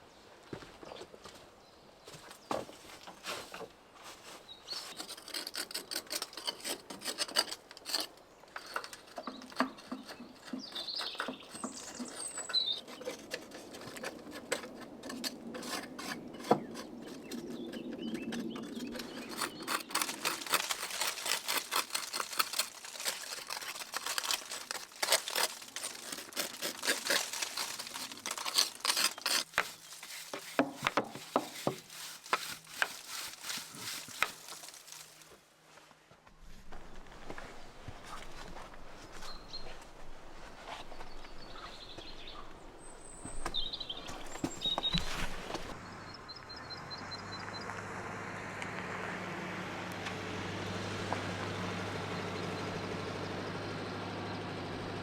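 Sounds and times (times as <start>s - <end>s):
hand tool scraping mortar joints: 4.7s - 35.3s, 42.0s - 45.8s.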